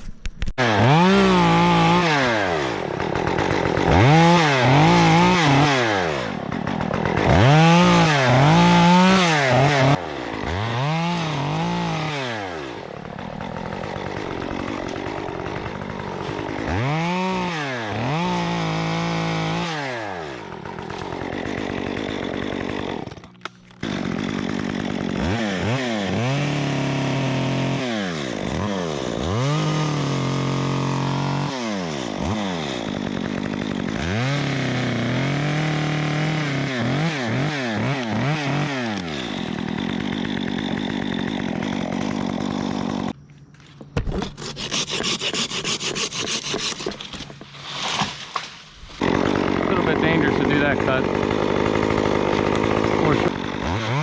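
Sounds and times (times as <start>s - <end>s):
chainsaw revving: 0.6s - 43.2s, 44.4s - 54.0s.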